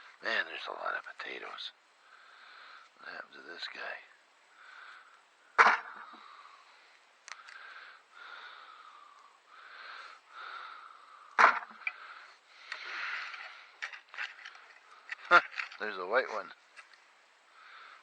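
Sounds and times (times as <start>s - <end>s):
soil rustling: 9.6s - 18.0s.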